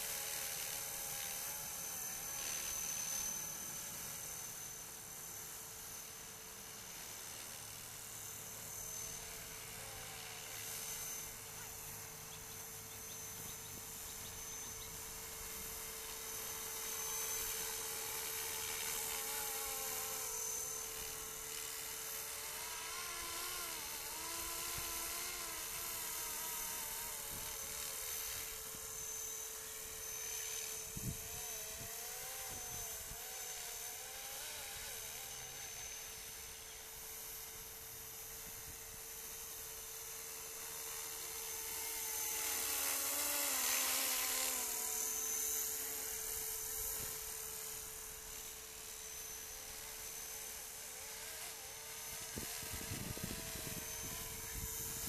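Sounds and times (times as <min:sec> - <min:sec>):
constant hum: 0:00.0 - 0:55.0
helicopter motor and rotor whine: 0:00.0 - 0:55.0.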